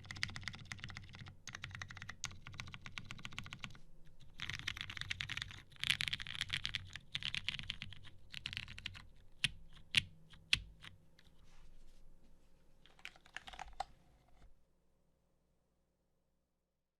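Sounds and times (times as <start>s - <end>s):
mechanical keyboard typing: 0.0s - 11.0s, 12.9s - 13.9s.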